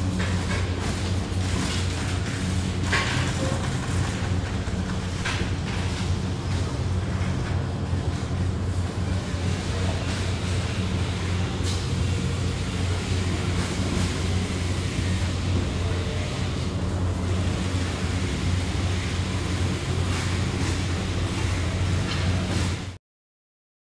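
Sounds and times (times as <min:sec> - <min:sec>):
factory machinery drone: 0:00.0 - 0:23.0.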